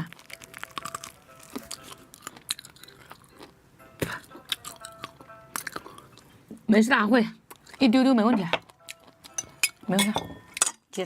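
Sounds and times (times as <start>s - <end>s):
person chewing crunchy food: 0.0s - 6.4s, 7.5s - 7.8s, 8.6s - 9.8s
faint music: 0.0s - 11.0s.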